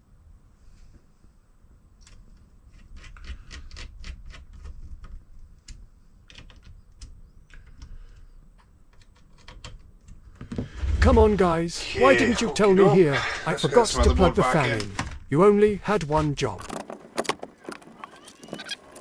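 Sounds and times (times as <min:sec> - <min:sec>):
low steady rumble: 0:10.6 - 0:12.7, 0:13.8 - 0:14.7.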